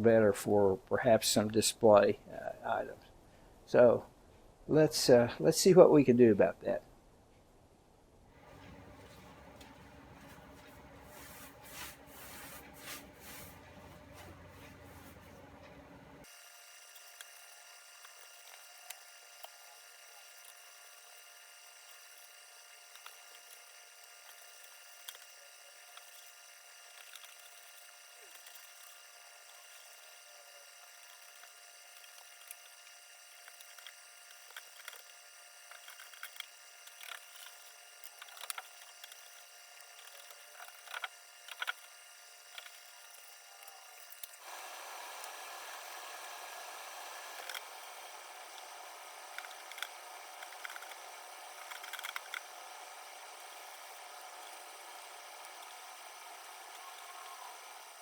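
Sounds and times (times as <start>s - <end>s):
steady hiss: 43.6s - 58.0s.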